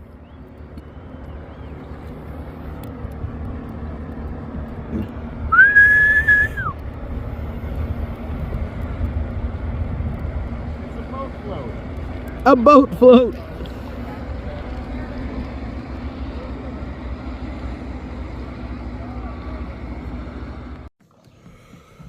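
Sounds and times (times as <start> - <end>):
low steady rumble: 0.0 - 20.9
loud whistle blast: 5.5 - 6.8.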